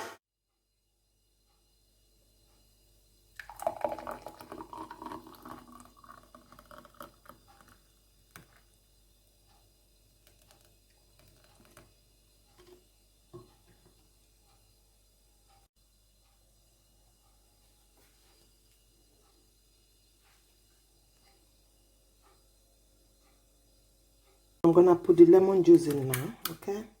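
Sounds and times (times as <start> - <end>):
smoothie sloshing and pouring: 3.4 - 7.8.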